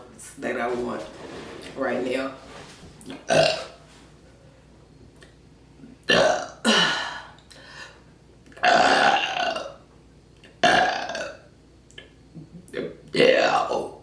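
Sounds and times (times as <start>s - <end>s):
woman burping: 3.2s - 3.8s, 6.0s - 7.3s, 8.6s - 9.8s, 10.6s - 11.4s, 12.4s - 14.0s.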